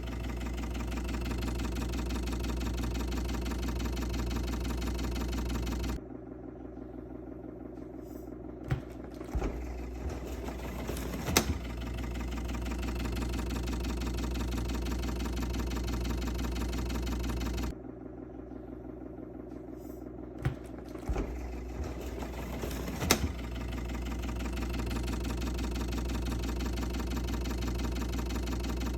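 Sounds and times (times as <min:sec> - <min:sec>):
sharp clicks: 0:00.0 - 0:06.0
refrigerator hum: 0:00.0 - 0:28.9.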